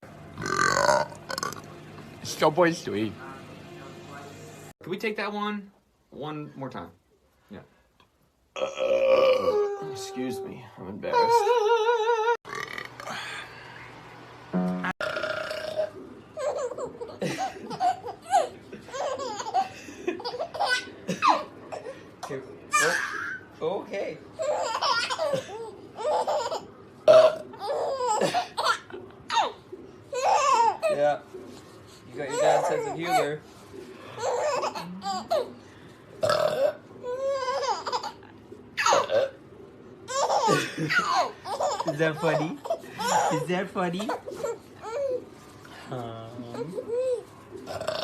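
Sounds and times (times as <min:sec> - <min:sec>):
person burping loudly: 0:00.4 - 0:01.7, 0:08.6 - 0:09.5, 0:14.9 - 0:15.9, 0:27.1 - 0:27.4, 0:36.2 - 0:36.8, 0:47.7 - 0:48.0.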